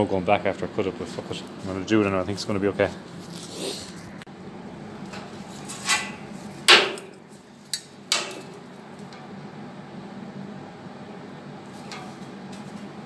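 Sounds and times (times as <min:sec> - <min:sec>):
steel tools clanking: 0:05.1 - 0:07.2, 0:08.1 - 0:08.6.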